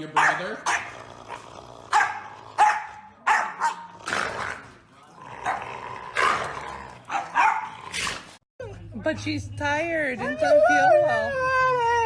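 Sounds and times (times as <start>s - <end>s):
dog barking: 0.1s - 1.0s, 1.9s - 3.9s, 7.1s - 7.8s.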